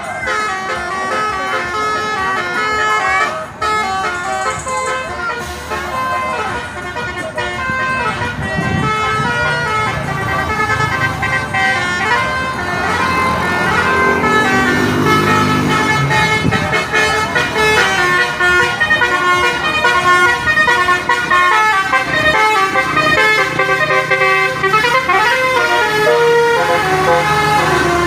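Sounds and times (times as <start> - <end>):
musical air horn playing a tune: 0.0 - 28.0.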